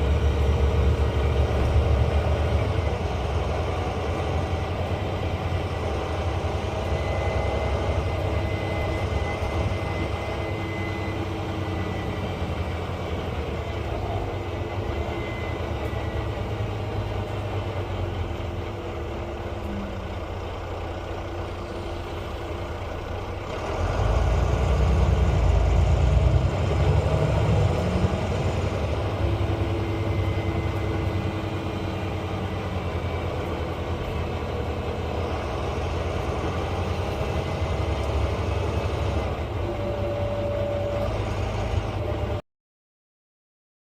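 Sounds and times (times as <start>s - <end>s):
diesel bus engine running: 0.0s - 42.4s
faint turbo whistle: 6.7s - 17.1s, 38.7s - 42.4s.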